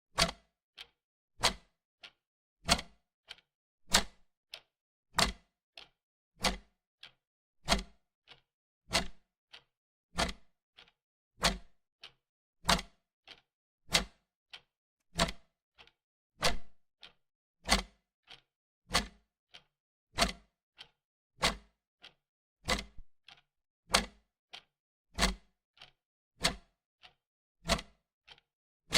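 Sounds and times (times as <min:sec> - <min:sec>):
wall clock ticking: 0:10.2 - 0:11.6, 0:16.4 - 0:17.9, 0:22.7 - 0:22.9.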